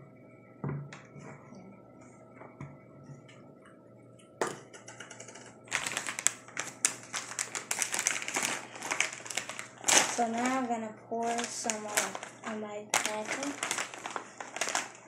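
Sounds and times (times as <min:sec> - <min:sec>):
snack bag crinkling: 0:05.7 - 0:15.0.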